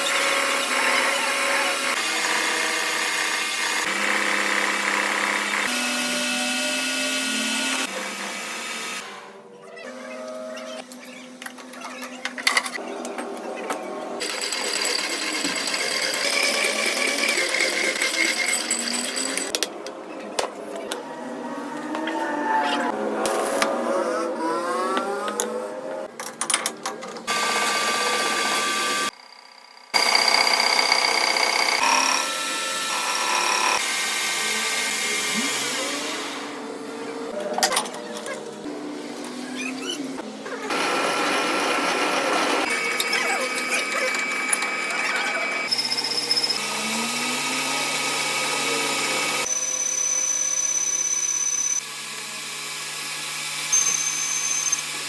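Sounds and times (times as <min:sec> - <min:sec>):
power tool whine: 0:00.0 - 0:09.3, 0:27.3 - 0:37.4, 0:40.6 - 0:55.0.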